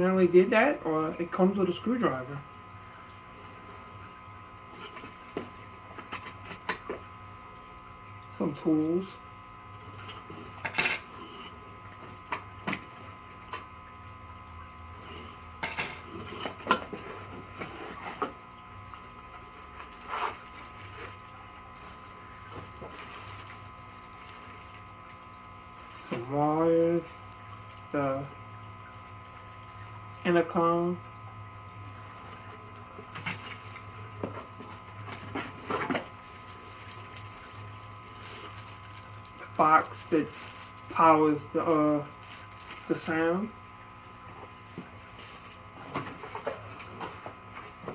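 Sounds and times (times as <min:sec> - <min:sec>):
faint steady hum: 0:00.0 - 0:47.9
parts and packaging handled: 0:33.1 - 0:41.0, 0:42.1 - 0:43.4.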